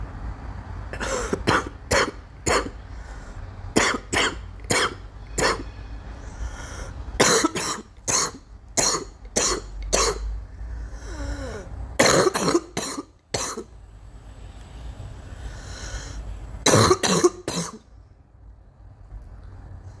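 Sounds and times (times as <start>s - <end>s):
girl coughing: 1.0s - 2.8s, 3.8s - 5.7s, 7.2s - 10.3s, 11.6s - 13.7s, 16.6s - 17.8s.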